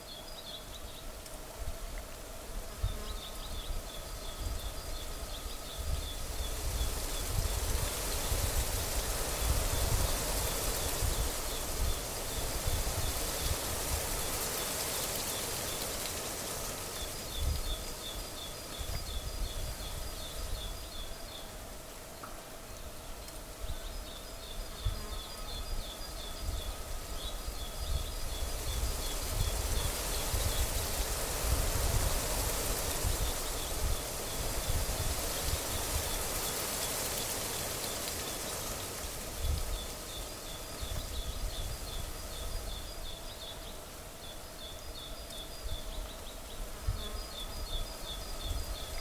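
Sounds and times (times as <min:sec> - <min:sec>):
wind gusting across microphone: 0:02.6 - 0:21.3, 0:23.5 - 0:49.0.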